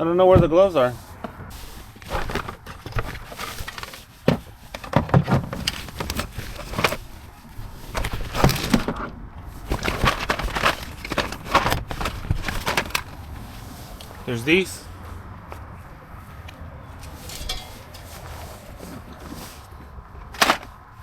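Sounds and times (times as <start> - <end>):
knocks and clicks of handled gear: 0.4 - 13.4, 20.2 - 20.9.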